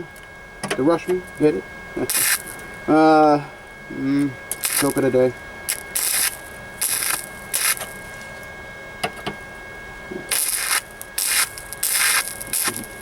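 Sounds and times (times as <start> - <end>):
welding hiss: 2.0 - 2.8, 4.5 - 8.5, 10.3 - 13.0.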